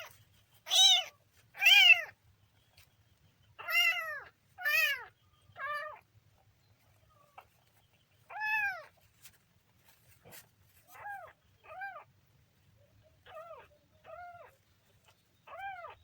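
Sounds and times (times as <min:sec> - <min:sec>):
kitten meowing: 0:00.7 - 0:02.1, 0:03.6 - 0:06.0, 0:08.3 - 0:08.9, 0:15.5 - 0:16.0.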